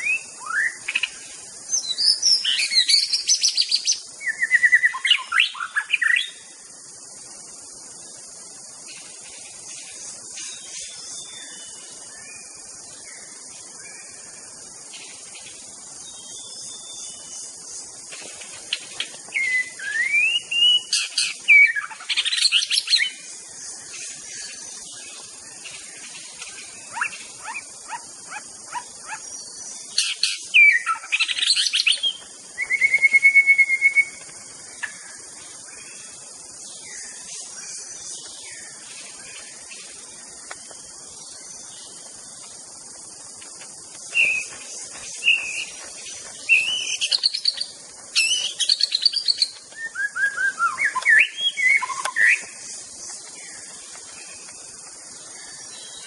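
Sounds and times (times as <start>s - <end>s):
high insect buzz: 0.0s - 56.0s
bird singing whistles and chatter: 19.3s - 23.1s, 30.0s - 34.2s, 44.1s - 45.8s, 46.4s - 52.5s.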